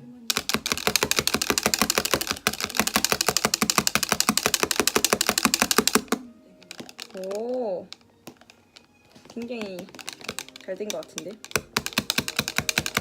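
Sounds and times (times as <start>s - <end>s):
whisk clicking against bowl: 0.3s - 13.0s.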